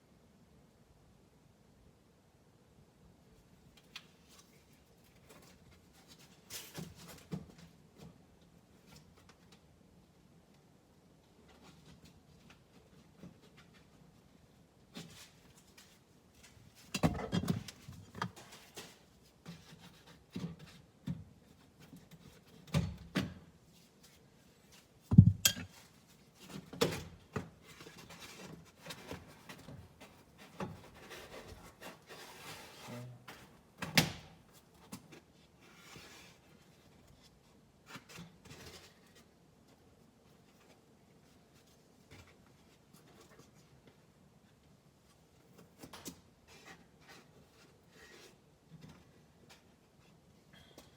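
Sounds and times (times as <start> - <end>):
rubbing and rustling: 23.6 - 33.5
plastic and metal knocks: 25.1 - 25.7.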